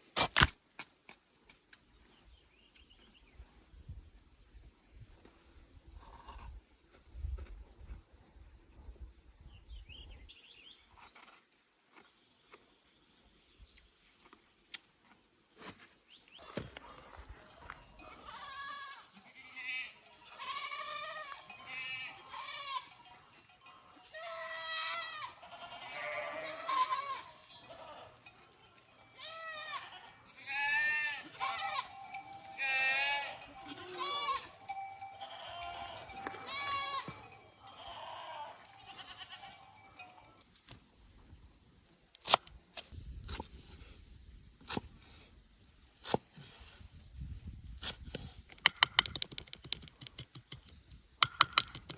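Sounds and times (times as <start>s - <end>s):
sheep and goats bleating: 17.9s - 40.4s.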